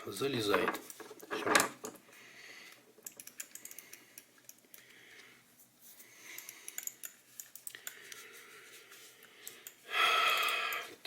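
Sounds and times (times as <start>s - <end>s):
small plastic parts clicking: 2.7s - 5.0s.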